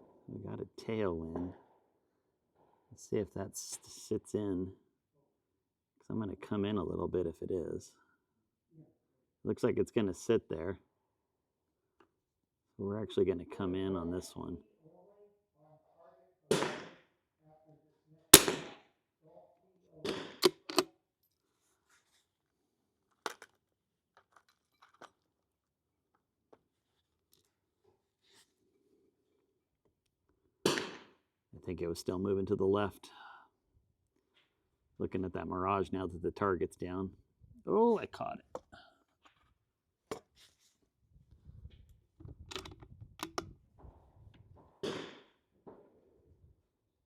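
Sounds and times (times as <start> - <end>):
rifle bolt clicks and knocks: 20.4 - 20.9, 42.2 - 43.5
wind rumble on microphone: 41.1 - 44.6.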